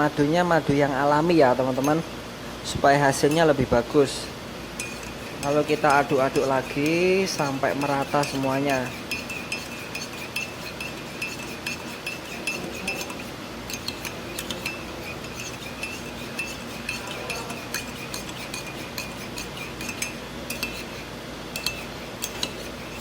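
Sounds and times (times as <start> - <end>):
spoon clinking against container: 4.8 - 23.0.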